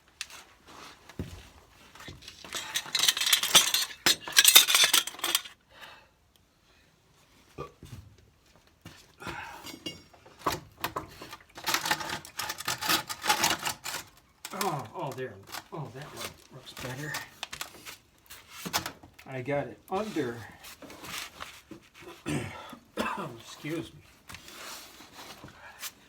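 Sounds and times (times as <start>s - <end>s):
metal tools clinking and clattering: 2.0s - 5.6s, 9.6s - 10.2s, 11.6s - 14.8s.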